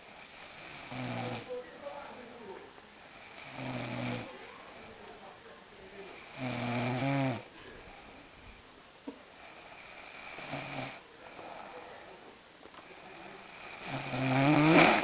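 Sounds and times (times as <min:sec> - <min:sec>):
man snoring: 0:00.0 - 0:01.5, 0:03.2 - 0:04.4, 0:06.1 - 0:07.5, 0:09.5 - 0:11.0, 0:13.0 - 0:15.0
quiet breathing: 0:00.0 - 0:15.0.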